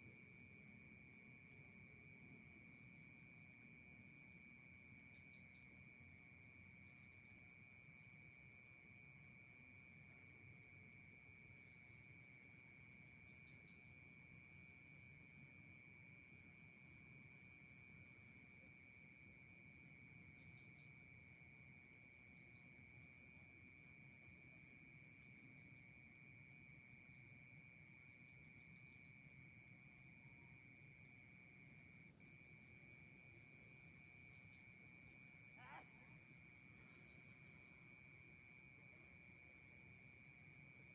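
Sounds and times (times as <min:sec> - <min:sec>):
low steady insect tone: 0:00.0 - 0:40.9
insects trilling: 0:34.5 - 0:39.4.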